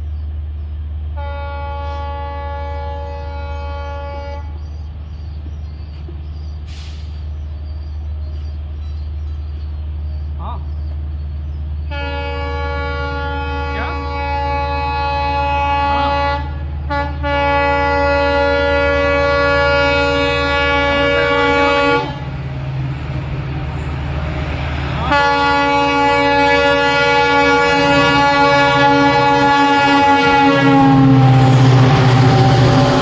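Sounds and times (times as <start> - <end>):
train rumbling: 0.0 - 33.0
locomotive horn blasts: 1.2 - 4.6, 11.9 - 22.3, 25.0 - 33.0.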